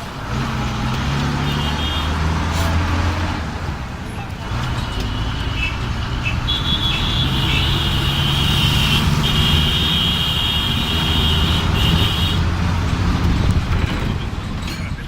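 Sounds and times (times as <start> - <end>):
road traffic engines: 0.0 - 15.0.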